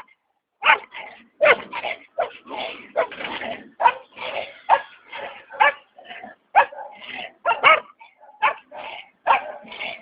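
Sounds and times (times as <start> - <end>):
dog barking: 0.0 - 3.2, 3.8 - 4.1, 4.7 - 5.9, 6.5 - 9.7.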